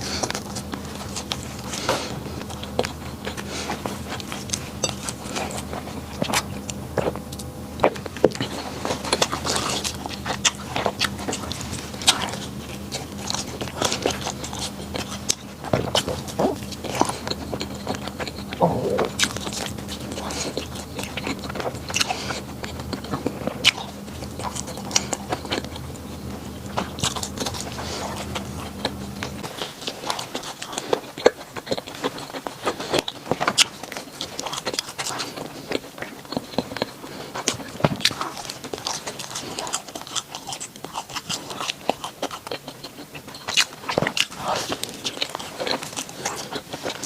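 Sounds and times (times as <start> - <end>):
low steady hum: 0.0 - 31.3
person chewing crunchy bread: 0.0 - 47.0.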